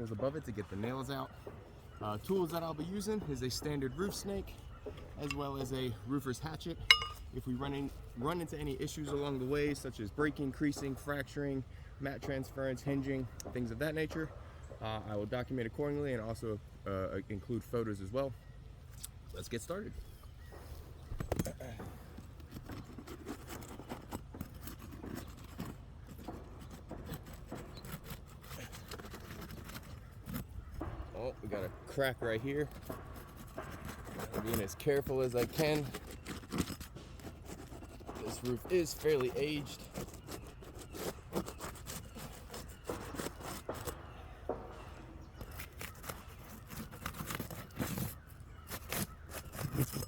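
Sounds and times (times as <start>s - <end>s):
hand tools scraping shingles: 20.6s - 50.0s.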